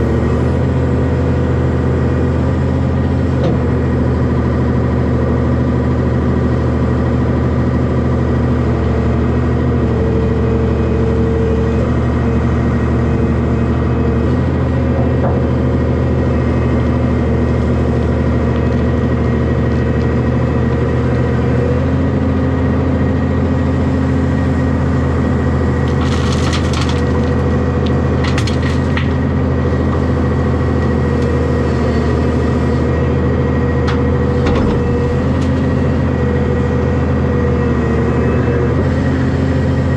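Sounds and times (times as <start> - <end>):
excavator diesel engine running: 0.0 - 39.9
cracking and clattering: 25.8 - 29.2.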